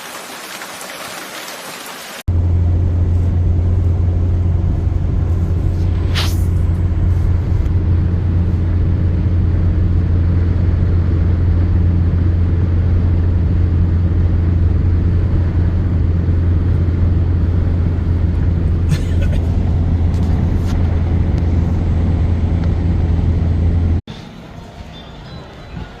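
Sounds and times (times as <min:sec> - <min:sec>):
steady rain: 0:00.0 - 0:02.3
low rumble: 0:02.3 - 0:24.0.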